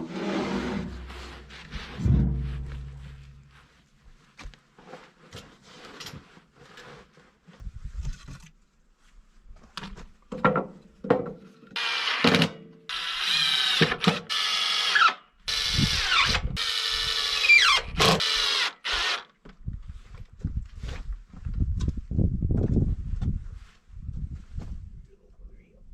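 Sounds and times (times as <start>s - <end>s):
cordless drill driving screws: 11.8s - 19.3s.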